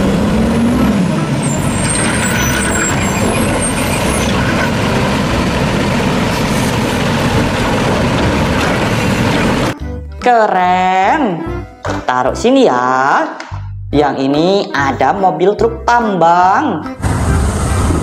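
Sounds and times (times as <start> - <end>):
garbage truck engine running: 0.0 - 9.8, 17.0 - 18.0
high squeaky tones: 1.3 - 5.2.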